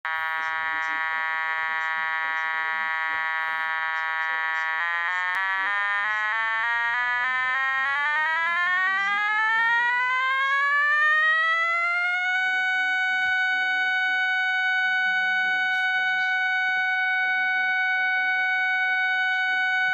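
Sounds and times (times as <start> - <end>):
metal detector tone: 0.1 - 6.6.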